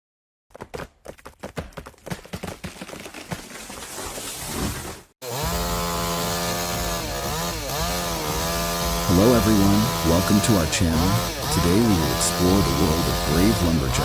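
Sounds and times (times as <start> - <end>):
chainsaw at high revs: 5.2 - 14.0.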